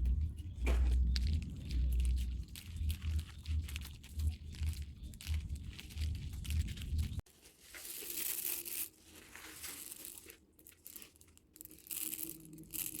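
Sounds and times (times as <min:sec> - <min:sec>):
low rhythmic hum: 0:00.0 - 0:07.2
corn sheller crunching kernels: 0:00.0 - 0:13.0.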